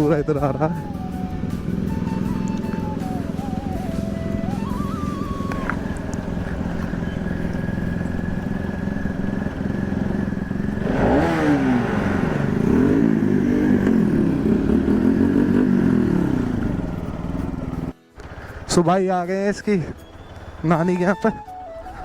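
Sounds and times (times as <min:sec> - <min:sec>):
motorcycle engine running: 0:00.0 - 0:21.2
wavering falling-pitch sound: 0:00.6 - 0:06.2.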